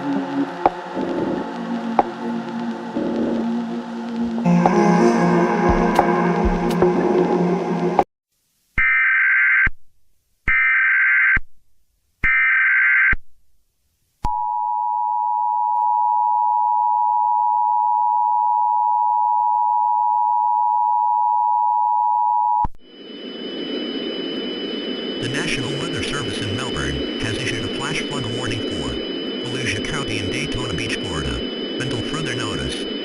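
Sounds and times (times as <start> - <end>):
faint steady whine: 0.0 - 8.0, 22.8 - 33.0
digital data bursts: 25.1 - 33.0
two-tone attention signal: 25.1 - 33.0.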